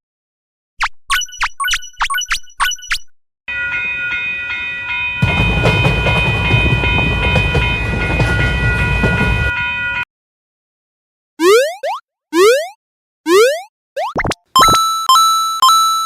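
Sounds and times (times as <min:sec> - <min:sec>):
train rumbling past: 0:03.5 - 0:10.0
railroad crossing bell clanging: 0:03.5 - 0:10.1.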